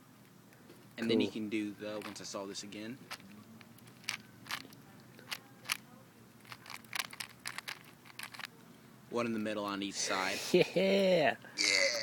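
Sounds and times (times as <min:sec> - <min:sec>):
puzzle cube clicking as turned: 0:03.1 - 0:05.8, 0:06.4 - 0:08.5.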